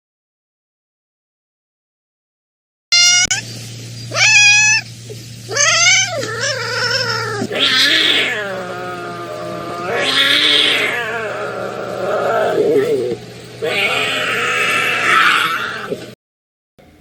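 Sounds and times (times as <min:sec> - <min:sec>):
cat meowing: 0:02.9 - 0:03.4, 0:04.1 - 0:04.9, 0:05.5 - 0:13.0, 0:13.6 - 0:15.9.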